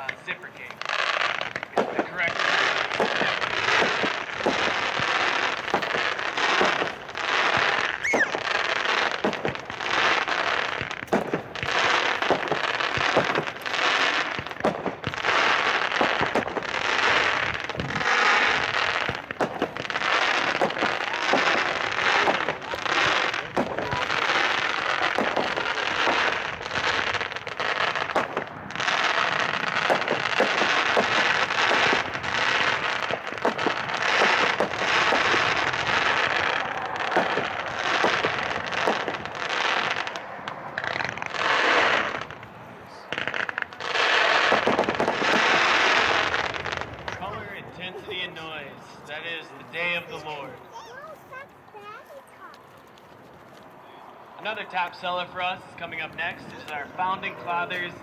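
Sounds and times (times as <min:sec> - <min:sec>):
fireworks sharp reports: 0:00.0 - 0:58.0
noisy firework bursts: 0:00.0 - 0:58.0.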